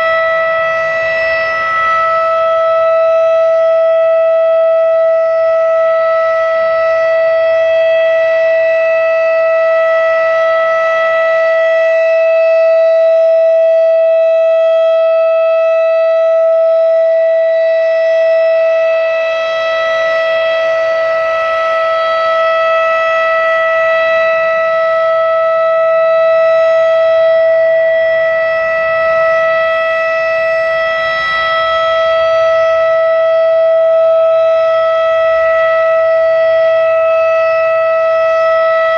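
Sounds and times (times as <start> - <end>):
warning siren steady tone: 0.0 - 38.9.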